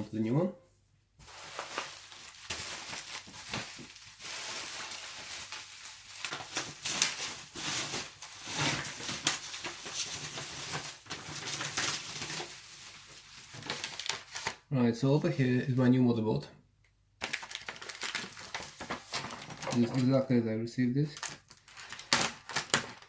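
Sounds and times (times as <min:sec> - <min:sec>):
rustling and scraping by hand: 0:01.2 - 0:14.1.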